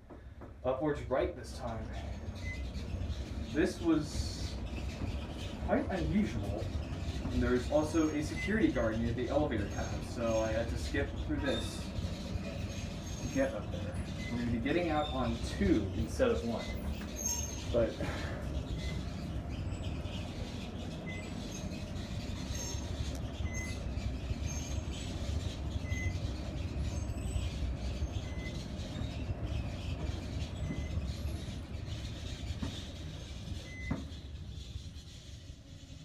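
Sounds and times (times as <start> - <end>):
elevator car rumbling: 0.0 - 36.0.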